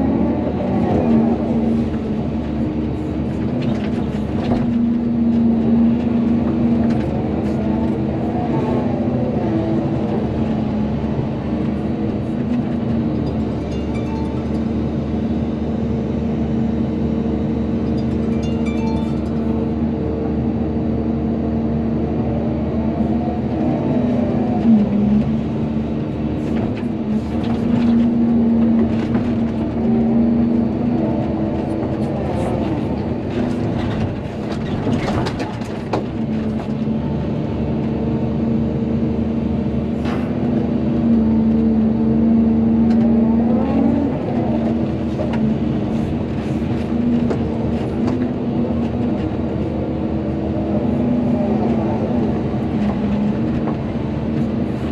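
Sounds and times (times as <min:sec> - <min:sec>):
excavator diesel engine running: 0:00.0 - 0:54.9
knocks and clanks: 0:33.2 - 0:36.8.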